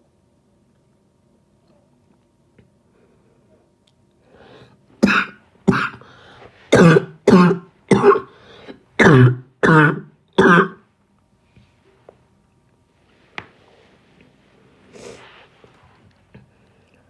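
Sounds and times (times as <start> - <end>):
person coughing: 5.0 - 6.1, 6.7 - 8.4, 9.0 - 10.8.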